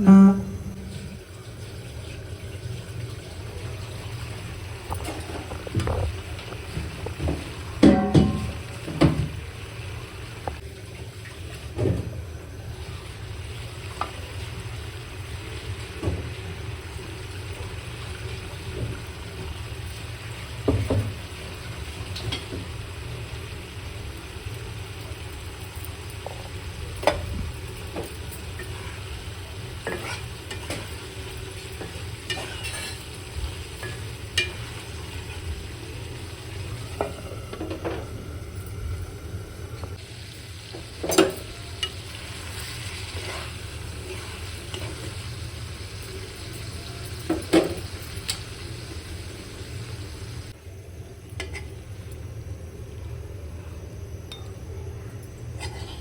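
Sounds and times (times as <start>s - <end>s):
steady low hum: 0.0s - 1.5s
faint sizzle in pan: 0.0s - 56.0s
spatula scraping and knocking pan: 32.3s - 33.0s.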